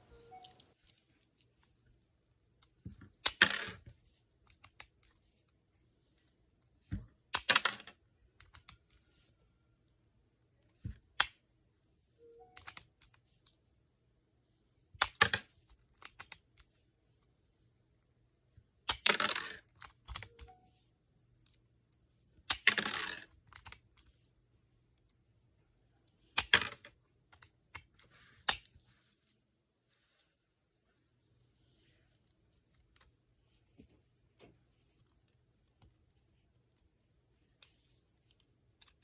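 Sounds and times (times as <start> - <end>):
plastic bricks clicking together: 22.5 - 23.8.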